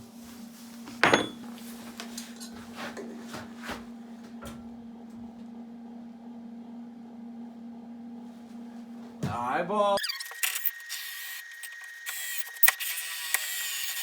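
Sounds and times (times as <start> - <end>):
metal parts knocking: 1.0 - 1.4
metallic clank ringing: 1.0 - 1.4.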